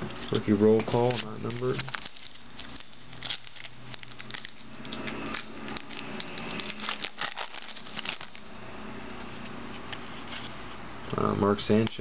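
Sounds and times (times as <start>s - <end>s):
cards flipping and rustling: 0.0s - 8.4s.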